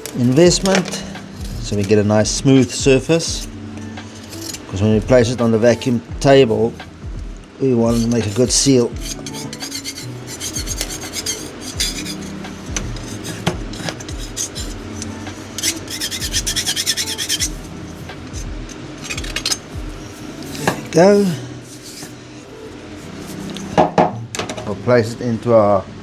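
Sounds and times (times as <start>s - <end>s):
scraping plaster off a flask: 2.6s - 4.7s, 7.9s - 17.7s, 18.4s - 19.6s, 20.5s - 22.2s.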